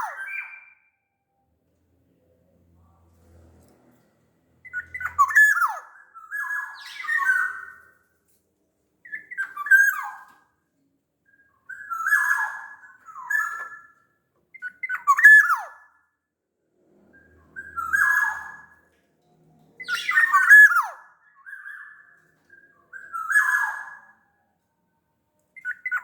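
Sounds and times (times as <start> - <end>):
bird singing fluting phrases: 4.6 - 7.8, 19.8 - 24.0.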